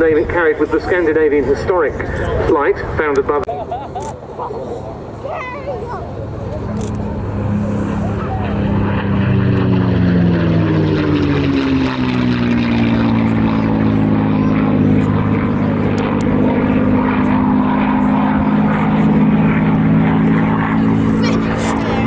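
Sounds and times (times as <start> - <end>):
propeller plane engine flying past: 0.0 - 22.0.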